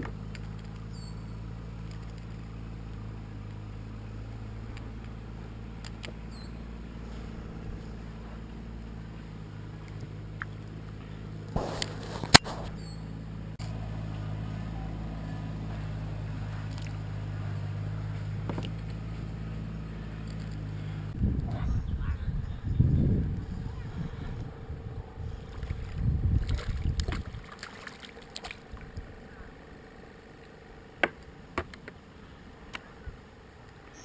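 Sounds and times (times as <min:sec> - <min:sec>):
short scrape: 0:11.6 - 0:13.0.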